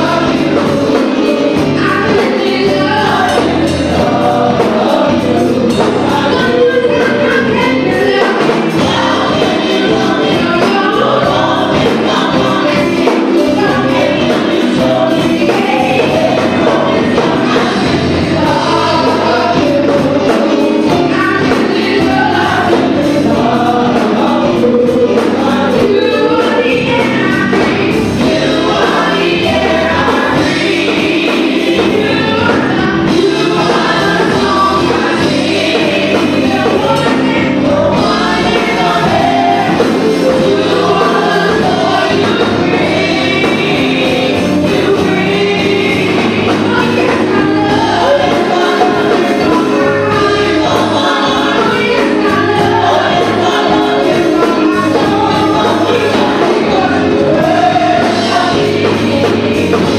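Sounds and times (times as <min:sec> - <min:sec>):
drums beating: 0:00.0 - 0:59.9
gospel choir singing: 0:00.0 - 0:59.9
live band: 0:00.0 - 0:59.9.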